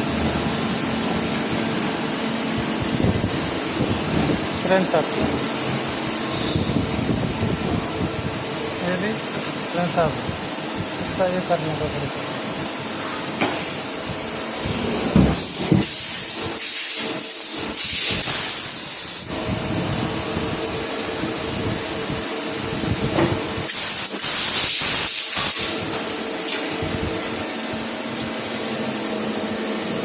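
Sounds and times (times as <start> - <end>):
machine humming: 0.0 - 30.0
loud hissing bursts: 14.6 - 20.6, 23.6 - 27.4.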